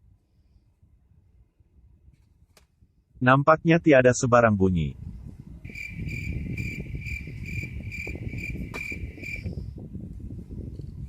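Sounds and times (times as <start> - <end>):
low rumble: 4.9 - 11.0
cricket trilling: 5.7 - 9.5.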